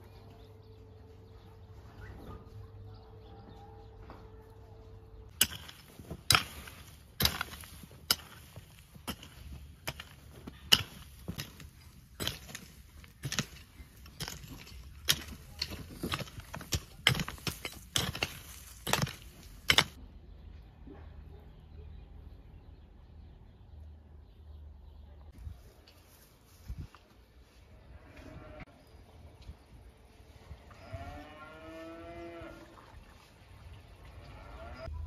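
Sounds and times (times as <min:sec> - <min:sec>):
sharp irregular knocks: 0:05.3 - 0:20.0.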